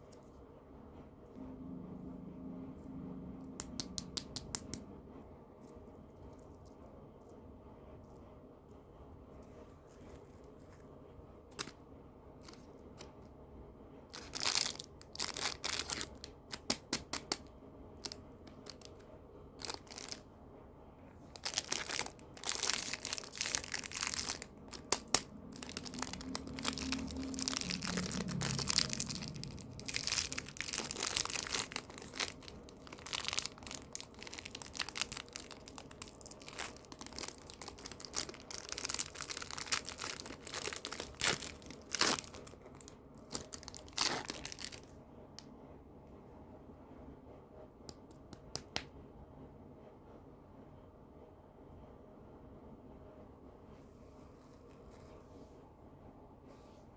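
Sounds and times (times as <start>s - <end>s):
plastic wrappers crinkling and tearing: 11.5s - 11.8s, 12.4s - 13.2s, 14.1s - 19.0s, 19.6s - 20.2s, 21.3s - 44.9s.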